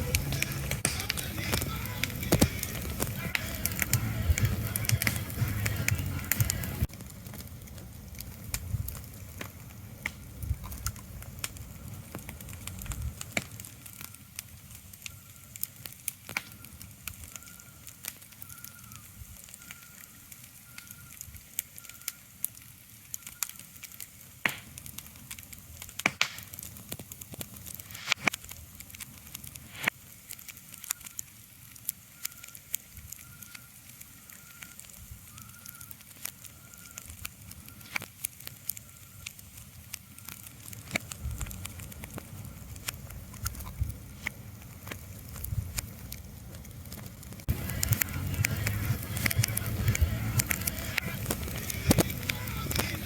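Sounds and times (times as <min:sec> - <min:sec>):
fire crackling and popping: 0:00.0 - 0:53.0.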